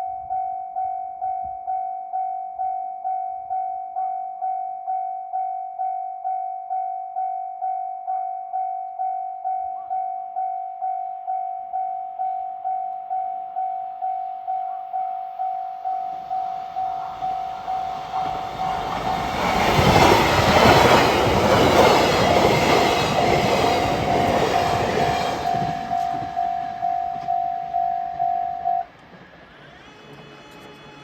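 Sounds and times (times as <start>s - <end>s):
level-crossing warning bell: 0.0s - 29.0s
train passing: 15.6s - 31.0s.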